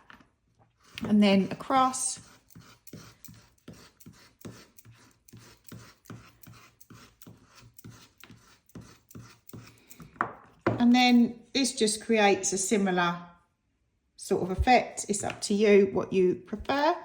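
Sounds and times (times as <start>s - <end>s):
fork scraping paste: 0.0s - 11.2s.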